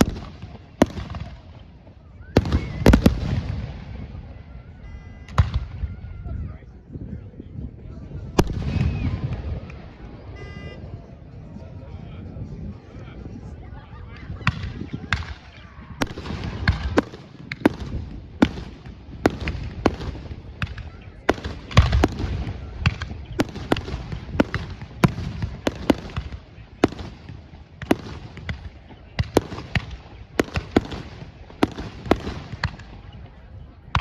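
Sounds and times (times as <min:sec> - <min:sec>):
fireworks cracks and bangs: 0:00.0 - 0:01.7, 0:02.4 - 0:04.2, 0:14.5 - 0:33.1.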